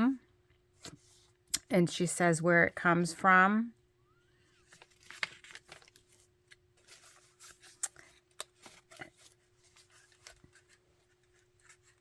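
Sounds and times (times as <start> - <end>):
paper pages rustling: 0.8 - 1.3, 4.6 - 12.0.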